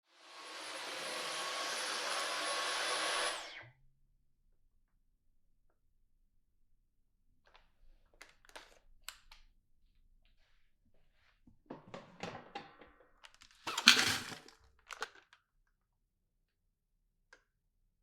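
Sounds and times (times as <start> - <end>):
plastic vacuum parts clicking: 13.2 - 15.4.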